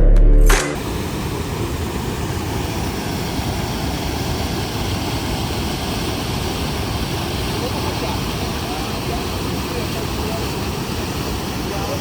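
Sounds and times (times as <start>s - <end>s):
background music: 0.0s - 0.8s
waterfall roaring: 0.8s - 12.0s.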